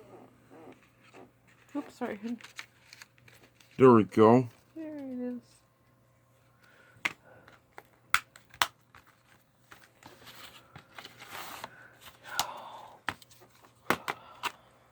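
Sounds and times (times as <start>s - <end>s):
soft rustling and sliding: 9.1s - 12.2s.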